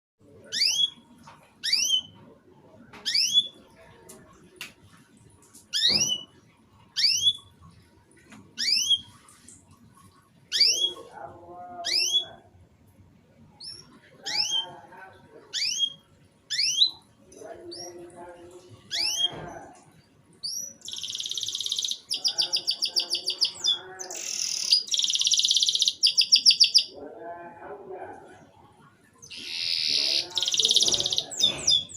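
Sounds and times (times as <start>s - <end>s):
faint low chatter: 0.2s - 31.9s
canary chirping: 0.5s - 1.0s, 1.6s - 2.2s, 3.0s - 3.6s, 5.7s - 7.8s, 8.6s - 9.2s, 10.5s - 12.5s, 13.5s - 14.9s, 15.5s - 18.0s, 18.9s - 19.4s, 20.4s - 27.0s, 29.2s - 31.9s.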